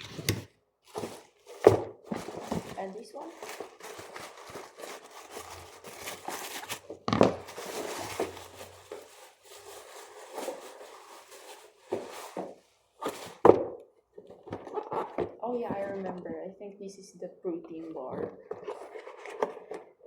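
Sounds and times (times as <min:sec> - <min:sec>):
plastic packaging crinkling: 0:00.0 - 0:13.5.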